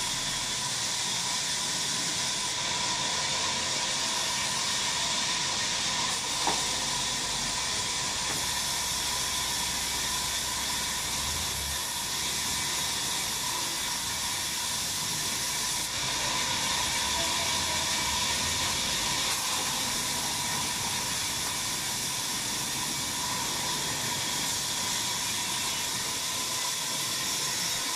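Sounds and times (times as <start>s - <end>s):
sawmill hissing and whining: 0.0s - 27.9s.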